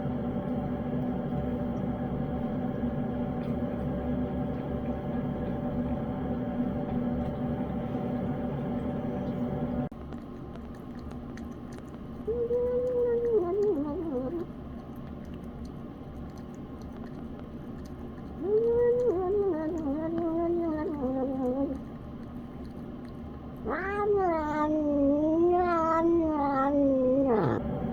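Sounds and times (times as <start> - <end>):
cat yowling: 12.3 - 14.4, 18.4 - 21.9, 23.6 - 27.6.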